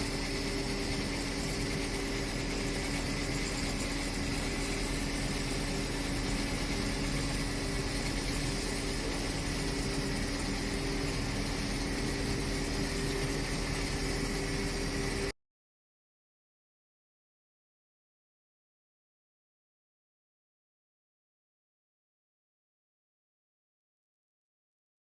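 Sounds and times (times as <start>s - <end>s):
machine humming: 0.0s - 15.3s.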